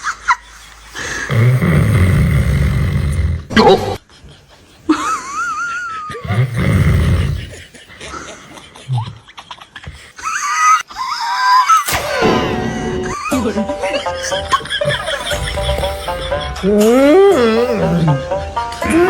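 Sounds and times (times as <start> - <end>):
man snoring: 1.1 - 3.6, 6.2 - 7.6, 14.9 - 19.0.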